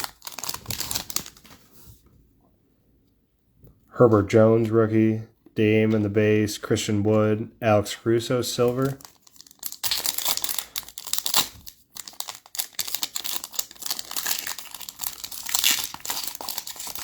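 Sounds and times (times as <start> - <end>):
foil wrapper crinkling and tearing: 0.0 - 1.6, 8.6 - 17.0.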